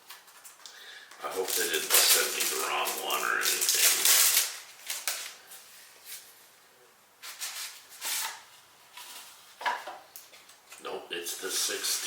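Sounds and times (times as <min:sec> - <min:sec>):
packaging rustling and scraping: 0:01.3 - 0:06.3, 0:07.2 - 0:09.8.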